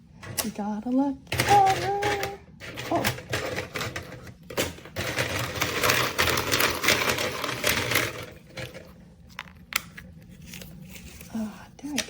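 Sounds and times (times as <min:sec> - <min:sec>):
plastic pieces clattering: 0:01.3 - 0:09.6.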